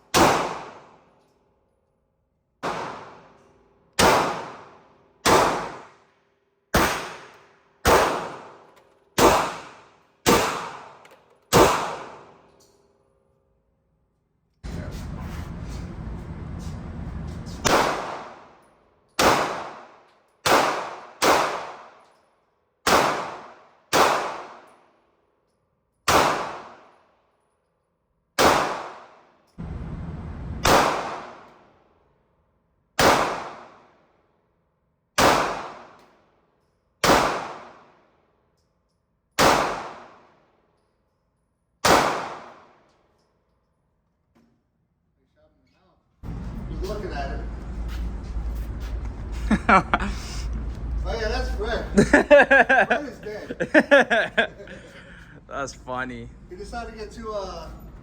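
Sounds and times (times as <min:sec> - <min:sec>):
gunshots with ringing tail: 0:02.6 - 0:03.3, 0:06.8 - 0:08.6, 0:17.6 - 0:18.5, 0:19.2 - 0:19.9, 0:26.1 - 0:26.8, 0:28.4 - 0:31.6, 0:33.0 - 0:33.8, 0:35.2 - 0:35.9, 0:37.0 - 0:37.8, 0:39.4 - 0:40.2.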